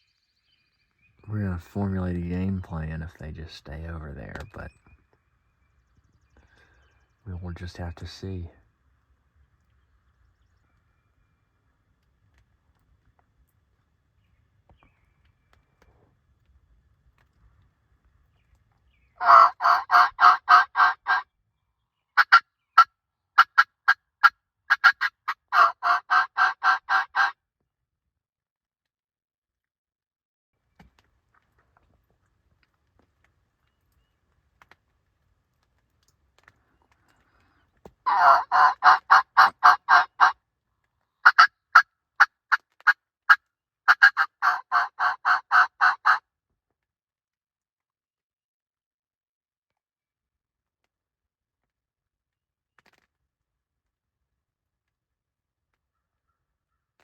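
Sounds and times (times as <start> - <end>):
hen turkey yelping and cutting: 19.2 - 21.2, 22.2 - 24.0, 24.7 - 27.3, 38.1 - 40.3, 41.2 - 41.5, 43.9 - 46.2.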